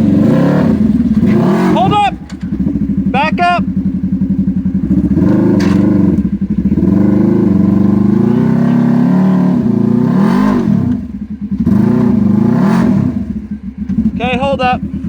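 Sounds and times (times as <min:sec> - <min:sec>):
utility vehicle engine revving: 0:00.0 - 0:15.0.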